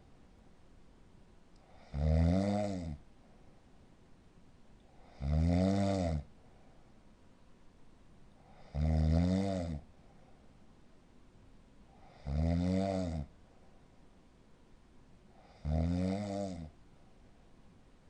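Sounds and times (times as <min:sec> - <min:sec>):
person snoring loudly: 0:01.7 - 0:03.0, 0:05.0 - 0:06.3, 0:08.6 - 0:09.8, 0:12.0 - 0:13.3, 0:15.4 - 0:16.7.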